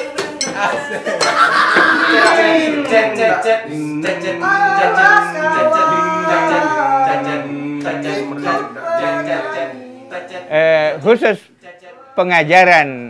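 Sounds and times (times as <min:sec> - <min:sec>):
instrumental accompaniment: 0:00.0 - 0:10.4
man singing: 0:00.0 - 0:12.5.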